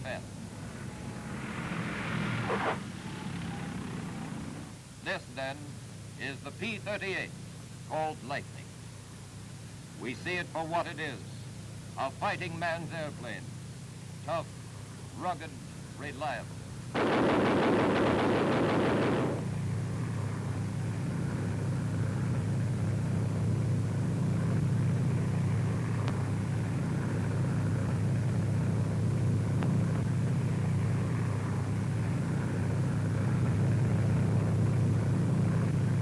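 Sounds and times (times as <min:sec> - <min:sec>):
rattling engine burst: 0:00.0 - 0:04.8, 0:17.0 - 0:19.8
aircraft engines droning: 0:00.0 - 0:36.0.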